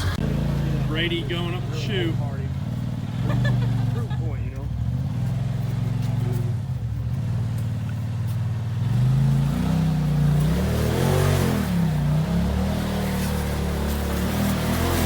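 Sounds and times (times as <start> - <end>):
vehicle engine revving: 0.0 - 15.0.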